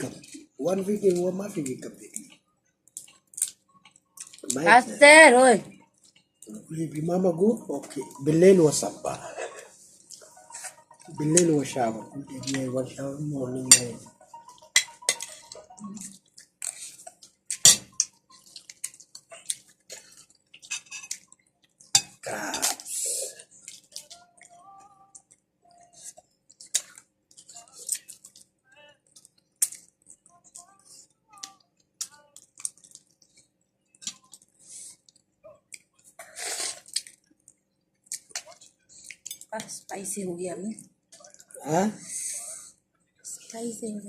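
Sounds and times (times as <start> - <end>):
plates and utensils clinking: 13.6 - 15.8, 17.6 - 18.0, 20.6 - 21.2
wet eating sounds: 15.2 - 30.6, 31.4 - 39.6.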